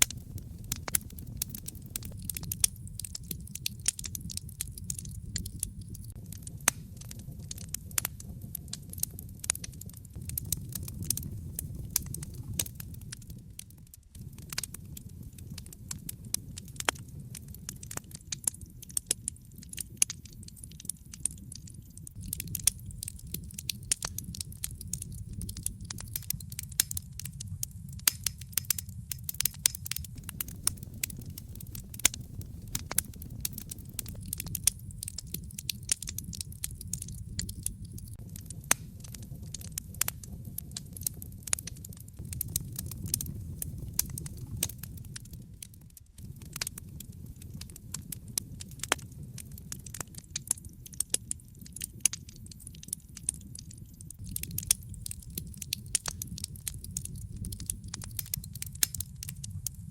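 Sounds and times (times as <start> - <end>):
wood fire crackling: 0.0 - 59.9.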